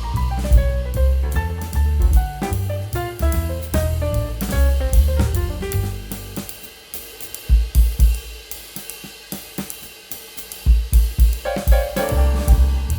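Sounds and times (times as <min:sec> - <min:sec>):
drum-kit groove: 0:00.0 - 0:12.9
melody and bass line: 0:12.1 - 0:12.9.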